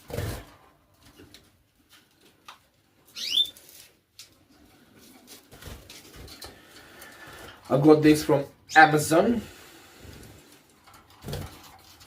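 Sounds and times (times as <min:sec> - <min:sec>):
small bird chirp: 0:03.1 - 0:03.6.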